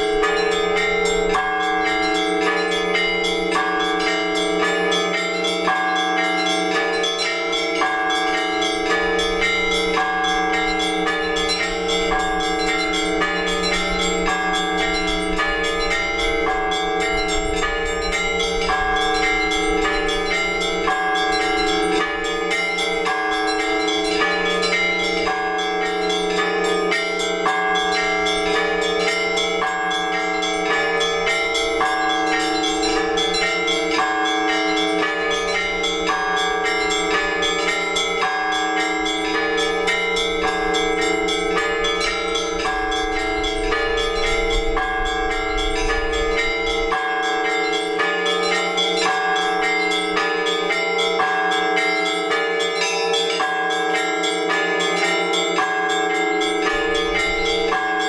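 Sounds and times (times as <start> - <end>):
church bells ringing a peal: 0.0 - 58.0.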